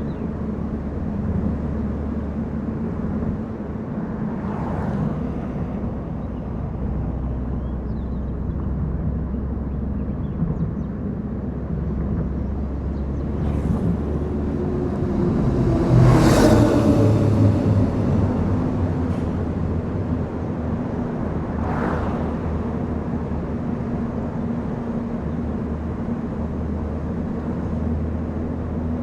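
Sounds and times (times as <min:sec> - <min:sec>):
car engine and tyre rumble: 0:00.0 - 0:29.0.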